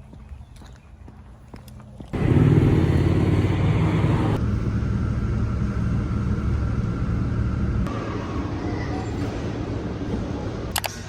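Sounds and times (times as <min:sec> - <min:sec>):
vehicle road and engine rumble: 0:01.6 - 0:11.0.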